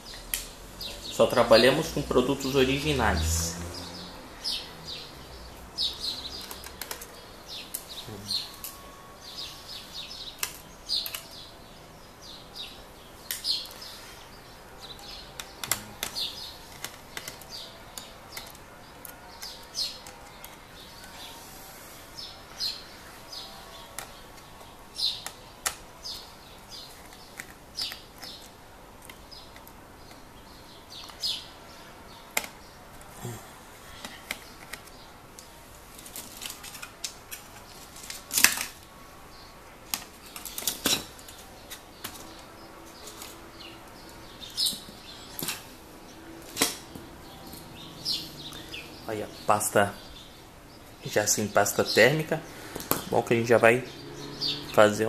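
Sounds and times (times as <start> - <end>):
birds chirping: 0.0 - 55.0
clicks and taps on laptop parts: 6.4 - 7.1, 15.4 - 18.6, 32.3 - 33.1.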